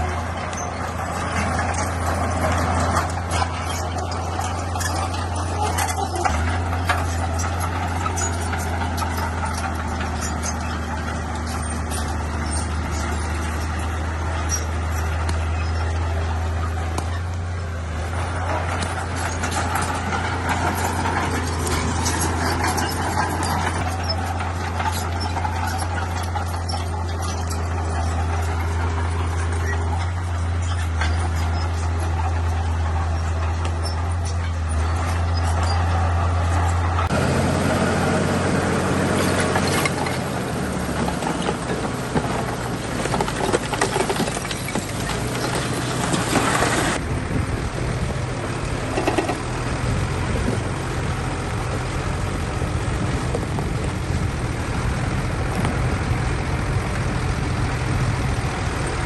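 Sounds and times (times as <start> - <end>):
clanks and knocks: 0.0 - 37.2, 39.0 - 47.0, 48.8 - 50.7
heavy diesel engine drone: 0.0 - 59.0.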